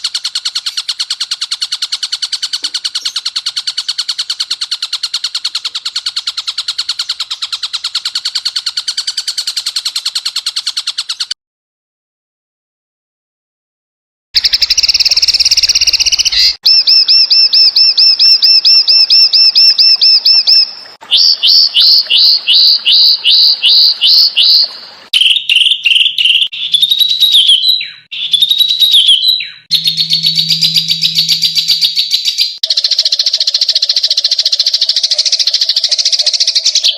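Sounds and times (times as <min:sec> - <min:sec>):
songbird chirps and whistles: 0:00.0 - 0:11.4, 0:14.4 - 0:36.9.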